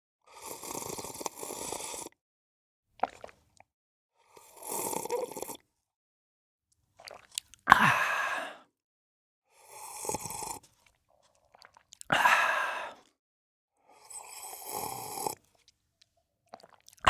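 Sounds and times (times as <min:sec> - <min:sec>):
man slurping coffee: 0:00.3 - 0:02.2, 0:03.0 - 0:03.4, 0:04.4 - 0:05.6, 0:07.0 - 0:08.5, 0:09.7 - 0:13.0, 0:14.0 - 0:15.6, 0:16.5 - 0:17.0
lip clicks: 0:07.1 - 0:07.8.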